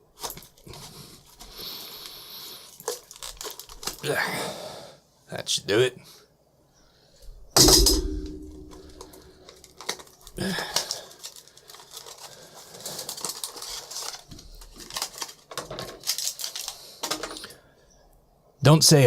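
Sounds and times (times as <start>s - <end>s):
packaging clicks and crinkles: 0.1s - 4.1s, 8.6s - 17.6s.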